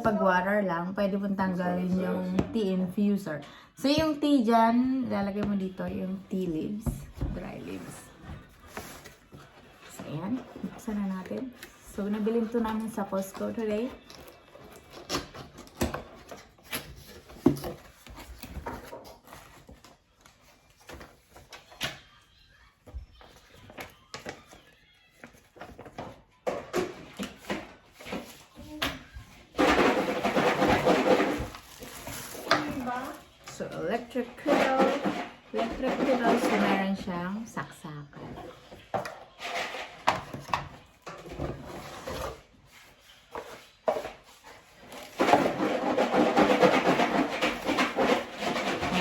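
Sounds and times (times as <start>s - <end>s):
cardboard scraping: 6.0s - 21.6s, 41.2s - 49.0s
packaging rustling: 29.6s - 33.4s.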